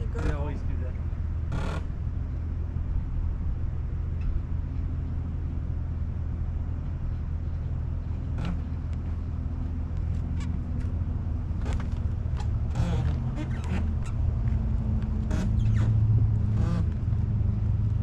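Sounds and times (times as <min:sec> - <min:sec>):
engine idling: 0:00.0 - 0:18.0.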